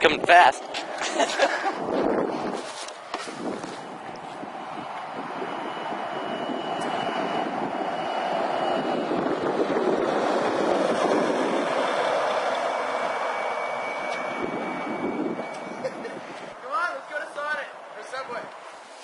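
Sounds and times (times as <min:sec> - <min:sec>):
vehicle driving past fast: 0:03.4 - 0:16.6
high whine dropping in pitch: 0:03.4 - 0:17.1.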